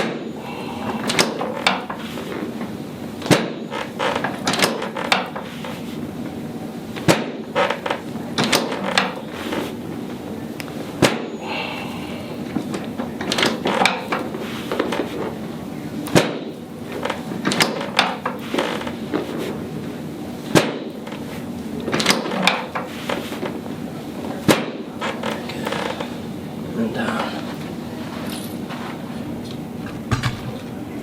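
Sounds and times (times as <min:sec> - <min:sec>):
table section snapping down: 0:03.2 - 0:05.5, 0:07.0 - 0:07.4, 0:11.0 - 0:11.3, 0:16.1 - 0:16.5, 0:20.5 - 0:20.9, 0:21.9 - 0:23.5, 0:24.4 - 0:25.9.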